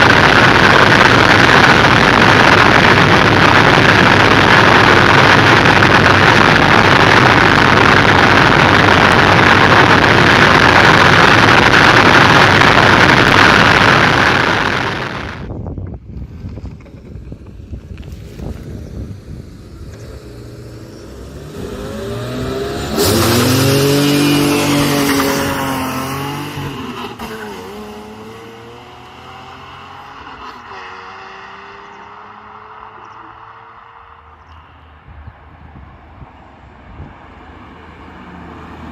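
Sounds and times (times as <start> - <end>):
car engine and road noise: 0.0 - 38.9.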